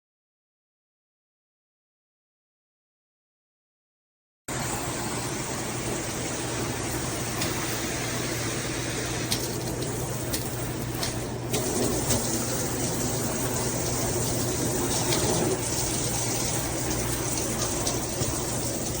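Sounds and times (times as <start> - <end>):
shower water spraying: 4.5 - 19.0.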